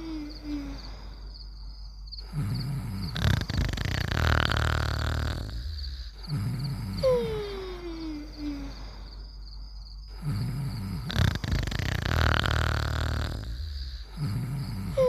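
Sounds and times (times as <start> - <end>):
cartoon rumbling snore: 2.2 - 8.8, 10.1 - 15.0
raspy hissing exhale: 2.2 - 9.2, 10.1 - 15.0.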